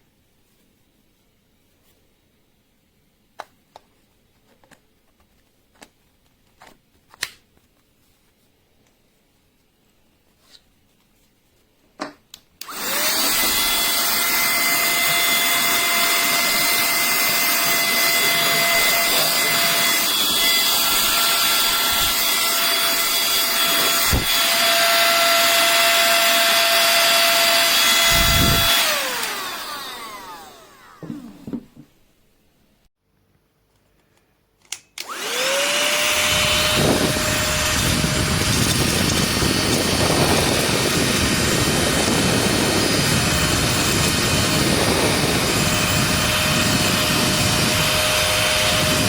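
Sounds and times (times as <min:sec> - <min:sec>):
mini vacuum high whine: 0:12.6 - 0:31.9, 0:35.0 - 0:49.0.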